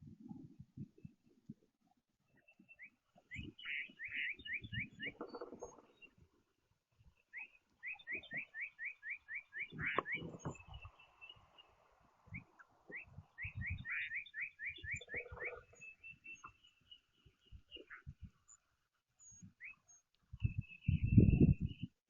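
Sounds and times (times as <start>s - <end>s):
songbird whistling: 2.5s - 6.0s, 7.2s - 11.4s, 12.3s - 17.0s.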